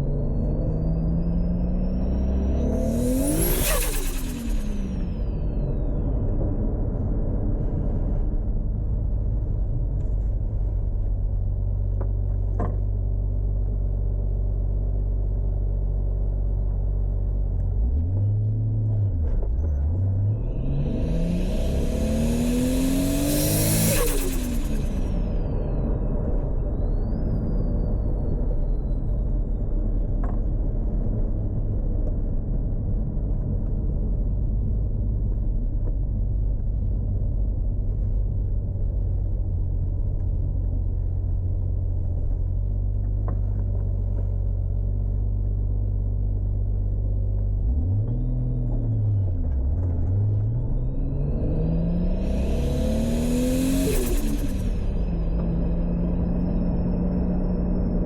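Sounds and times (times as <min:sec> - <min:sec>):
engine revving: 0:00.0 - 0:06.0, 0:17.8 - 0:27.3, 0:47.6 - 0:58.0
car engine running: 0:00.0 - 0:07.0, 0:09.1 - 0:42.5, 0:43.1 - 0:58.0
turbo hiss: 0:20.8 - 0:25.3.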